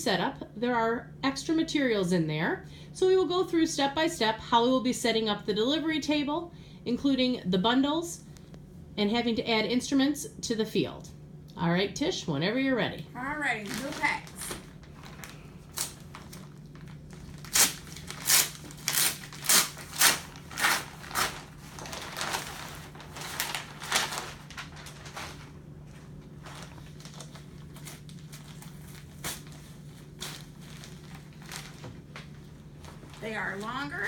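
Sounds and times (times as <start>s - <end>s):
steady low hum: 0.0s - 34.0s
packaging crinkling: 13.6s - 34.0s
packaging rustling: 13.6s - 34.0s.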